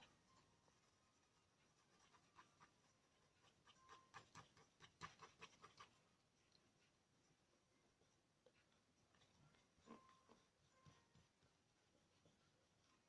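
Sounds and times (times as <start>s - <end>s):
pencil scratching on paper: 0.0s - 6.1s.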